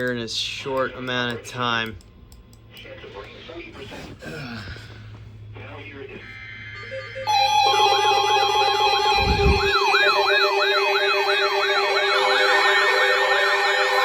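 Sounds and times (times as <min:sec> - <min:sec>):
low hum: 0:06.5 - 0:14.0
siren-like wail sweeping down: 0:06.6 - 0:14.0
electronic alert tones: 0:06.8 - 0:14.0.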